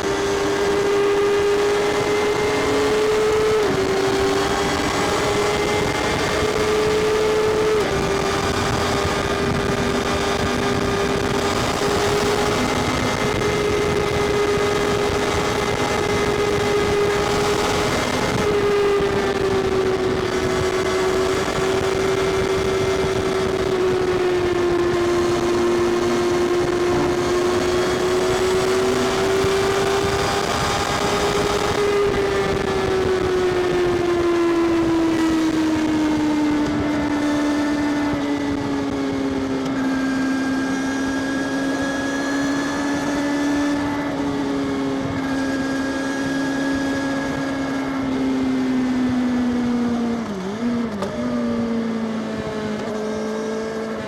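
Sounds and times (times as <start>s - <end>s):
motorcycle engine and exhaust: 0.0s - 54.0s.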